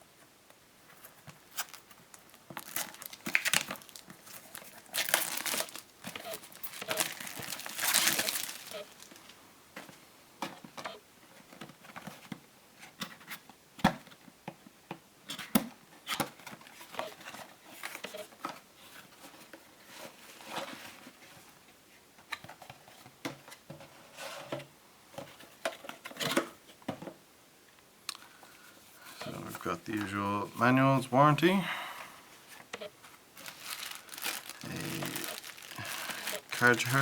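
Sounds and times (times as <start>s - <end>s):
packaging rustling and crinkling: 1.0s - 9.4s, 32.5s - 37.0s.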